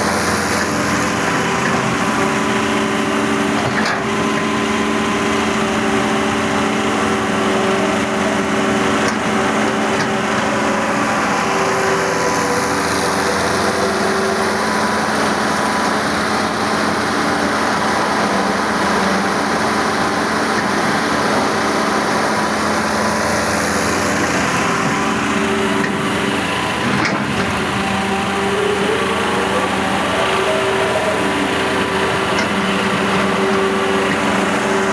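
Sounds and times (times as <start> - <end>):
excavator diesel engine running: 0.0 - 34.9.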